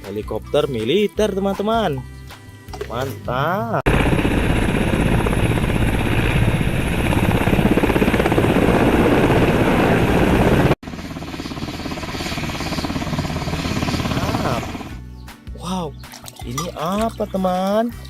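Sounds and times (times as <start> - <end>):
helicopter rotor and engine: 3.9 - 15.0.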